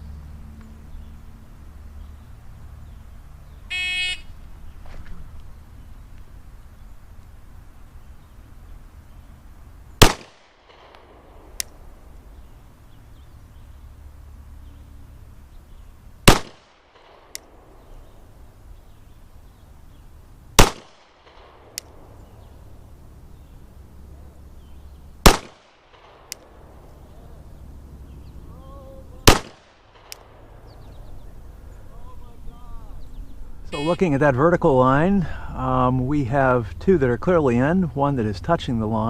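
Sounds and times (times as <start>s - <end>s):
pistol shots with echo: 10.0s - 11.8s, 16.2s - 17.8s, 20.6s - 22.1s, 25.2s - 26.8s, 29.2s - 30.5s.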